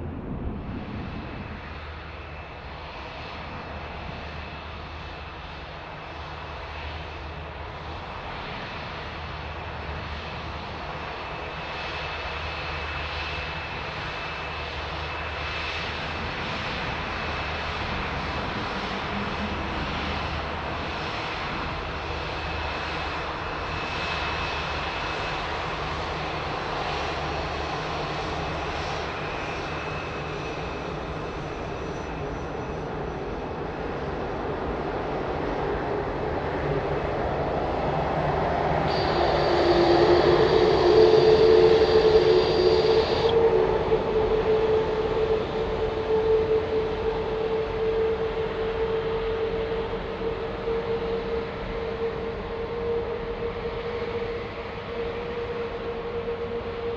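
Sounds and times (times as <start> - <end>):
jet engines running: 0.0 - 56.9
high whine: 17.6 - 56.9.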